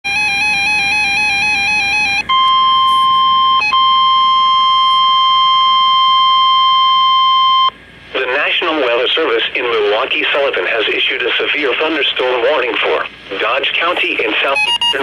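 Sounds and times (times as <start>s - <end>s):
steady warning alarm tone: 0.1s - 7.8s, 14.4s - 15.0s.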